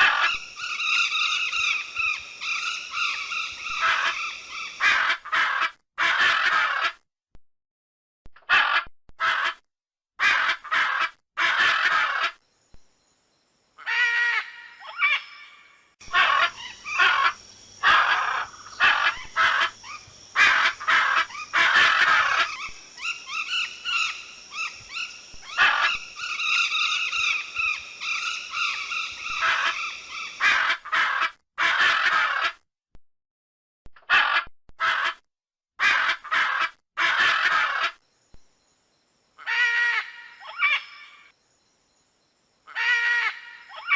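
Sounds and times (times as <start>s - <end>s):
macaws squawking: 0.0s - 6.9s, 13.9s - 32.5s, 35.8s - 38.0s
steady high hiss: 0.4s - 4.8s, 16.0s - 30.5s.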